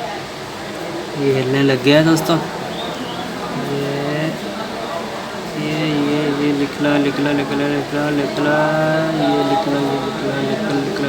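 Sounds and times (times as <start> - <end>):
man humming: 3.6 - 4.4, 5.5 - 11.0.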